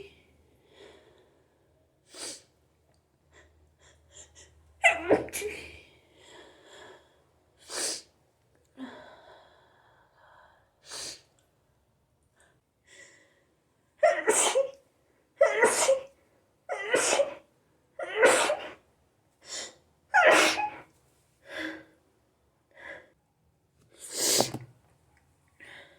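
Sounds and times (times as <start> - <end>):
person sneezing: 14.0 - 14.8, 15.4 - 16.1, 16.7 - 17.4, 18.0 - 18.8, 20.2 - 20.8, 24.1 - 24.6.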